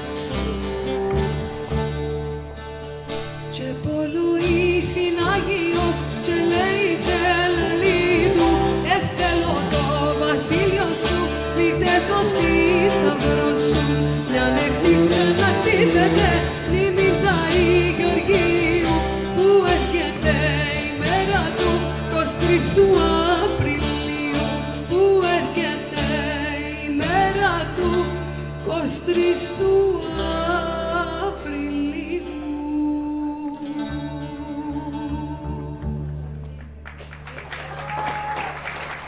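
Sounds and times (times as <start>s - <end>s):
bowed viola melody: 0.0s - 3.7s, 4.6s - 24.4s
plucked lute: 0.0s - 36.8s
bass: 0.0s - 39.0s.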